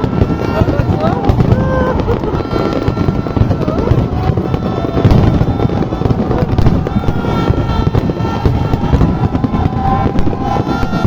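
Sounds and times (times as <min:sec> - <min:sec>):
fireworks bangs and crackles: 0:00.0 - 0:11.0.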